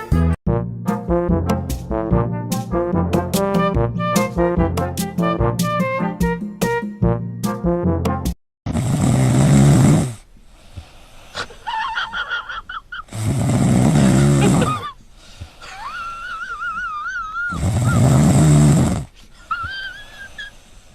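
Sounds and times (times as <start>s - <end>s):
animal snoring: 8.7s - 10.2s, 13.1s - 14.8s, 17.5s - 19.1s.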